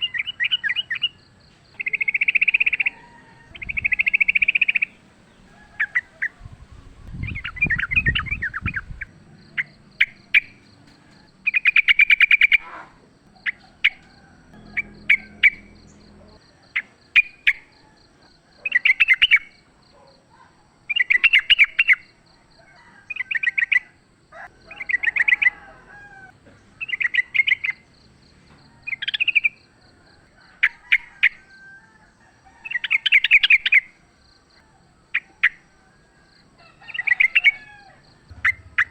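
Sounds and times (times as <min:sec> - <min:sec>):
bird singing bubbling phrases: 0:01.8 - 0:05.0, 0:05.9 - 0:10.6
faint pulsing high tone: 0:13.2 - 0:18.1, 0:38.3 - 0:38.9.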